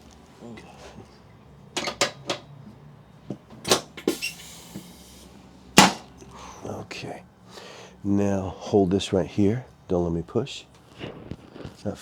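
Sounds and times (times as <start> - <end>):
joint clicks and knocks: 1.8 - 2.5.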